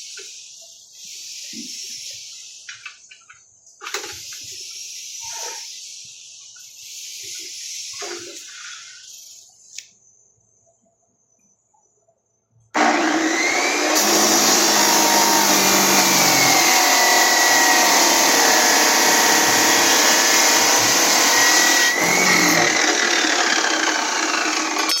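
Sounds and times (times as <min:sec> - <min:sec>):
power tool running loudly: 0:12.8 - 0:25.0.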